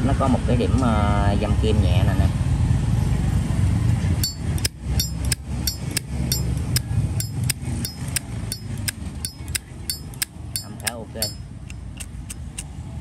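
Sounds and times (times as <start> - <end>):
lighter lid metallic clicks: 7.2 - 12.7.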